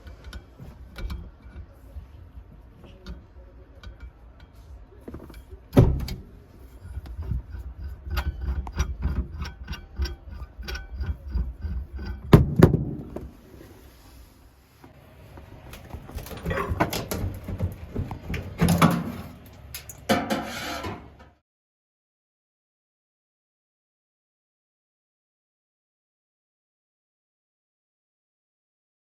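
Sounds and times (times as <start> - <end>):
scraping and rustling: 13.1 - 21.2.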